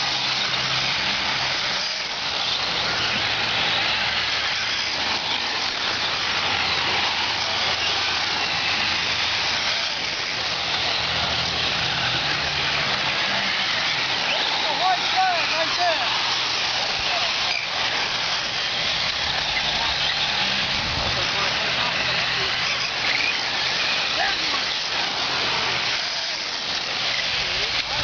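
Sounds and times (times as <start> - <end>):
racing engines buzzing: 0.0 - 28.0.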